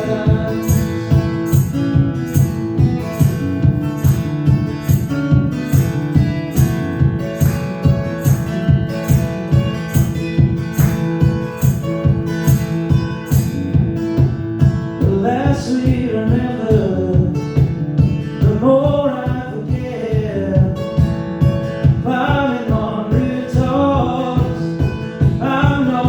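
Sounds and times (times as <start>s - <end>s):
guitar strumming: 0.0s - 26.0s.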